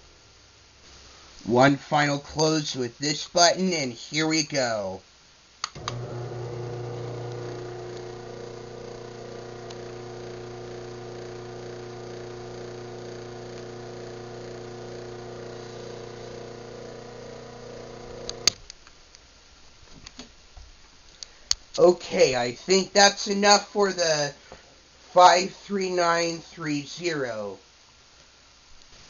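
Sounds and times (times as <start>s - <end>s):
garage door opener motor hum: 5.8s - 18.6s
faint clicks: 18.2s - 19.2s.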